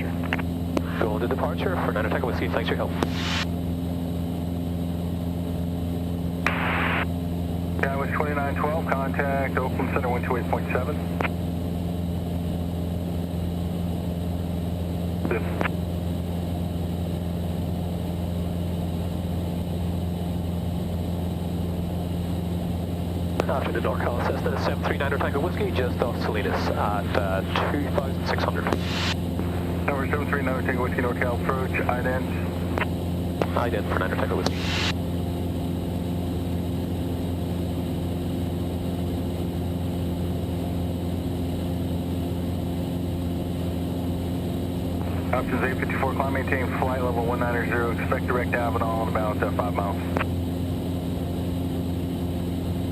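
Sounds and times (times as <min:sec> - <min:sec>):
propeller plane engine droning: 0:00.0 - 0:52.9.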